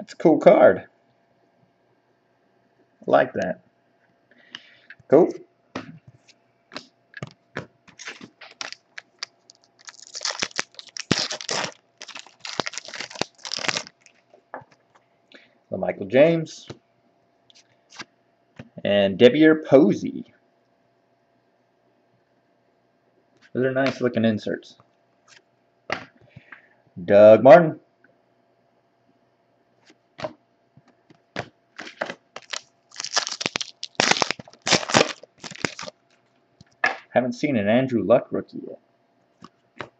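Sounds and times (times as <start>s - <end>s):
wrapper being torn and crinkled: 8.0s - 14.2s, 31.9s - 36.0s.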